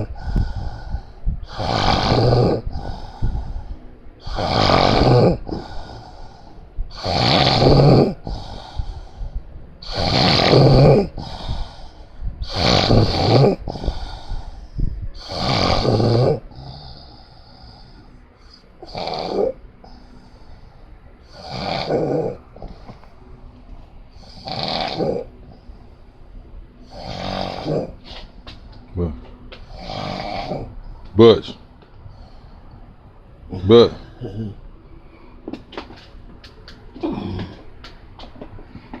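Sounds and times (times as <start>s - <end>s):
loud rattling snoring: 0.0s - 3.6s, 4.2s - 6.3s, 6.9s - 9.0s, 9.8s - 14.5s, 15.2s - 17.9s, 18.8s - 19.6s, 21.3s - 22.9s, 24.2s - 25.3s, 26.8s - 28.3s, 29.0s - 31.5s
faint breathing: 0.0s - 39.0s.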